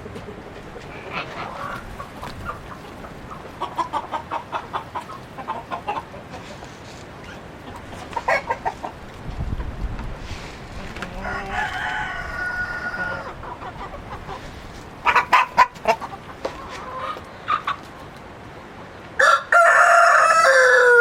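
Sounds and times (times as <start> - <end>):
chickens clucking: 0.0 - 21.0.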